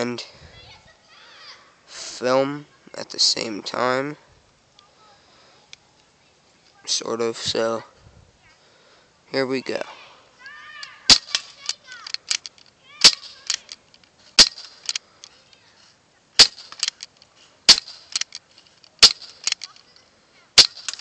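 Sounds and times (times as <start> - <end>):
faint clicks: 10.4 - 15.7
bb pistol firing pops: 11.1 - 13.7, 14.4 - 15.0, 16.4 - 17.0, 17.7 - 18.4, 19.0 - 19.7, 20.6 - 21.0.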